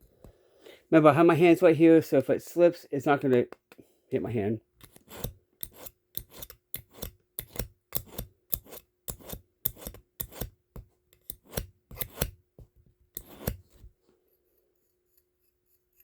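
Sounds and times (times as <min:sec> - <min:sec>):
knife being sharpened: 0:04.8 - 0:10.5, 0:11.2 - 0:12.4, 0:13.2 - 0:13.8.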